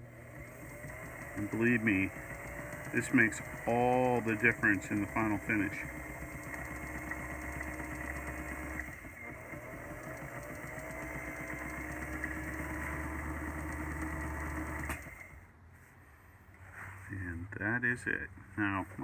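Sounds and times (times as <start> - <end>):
small electric motor running: 0.0 - 15.4.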